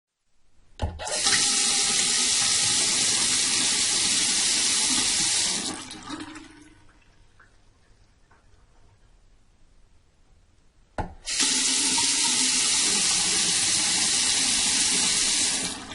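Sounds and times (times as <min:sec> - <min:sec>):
tap water running into basin: 0:00.9 - 0:07.6, 0:11.0 - 0:15.9
faint water drips: 0:05.9 - 0:09.5.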